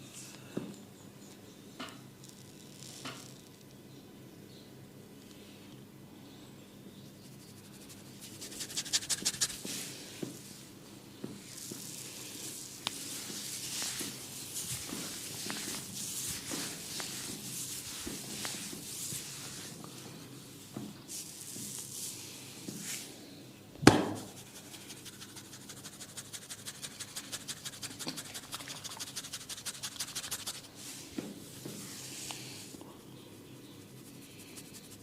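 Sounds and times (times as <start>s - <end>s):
hands rubbing hair and scalp: 7.3s - 10.6s, 11.3s - 23.1s, 24.1s - 32.8s, 33.4s - 35.0s.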